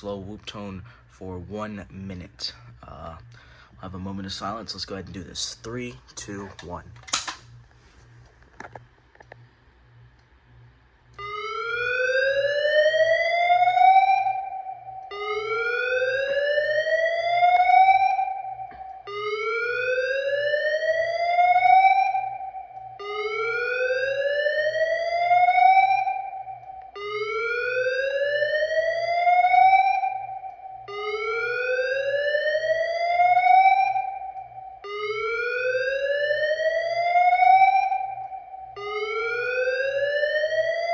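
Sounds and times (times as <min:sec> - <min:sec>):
fire alarm whoop tone: 0:11.2 - 0:40.9.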